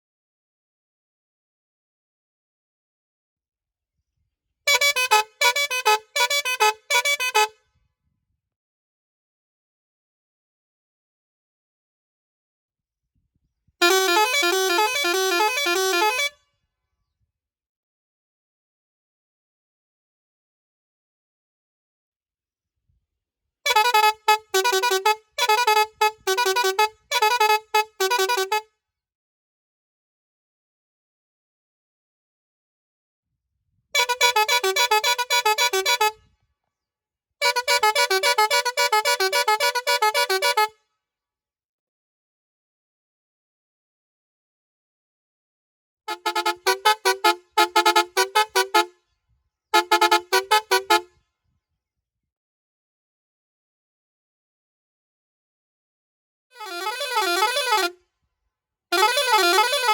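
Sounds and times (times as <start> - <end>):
multi-tone car horn tune: 4.7 - 7.6, 13.8 - 16.5, 23.7 - 28.8, 34.0 - 36.3, 37.4 - 40.8, 46.1 - 49.0, 49.8 - 51.2, 56.5 - 58.1, 58.9 - 59.9.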